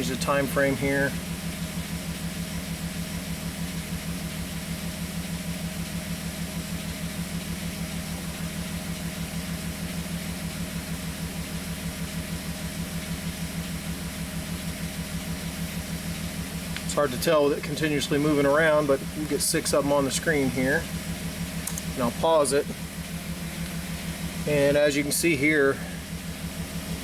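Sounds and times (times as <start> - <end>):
van engine idling and misfiring: 0.0 - 27.0.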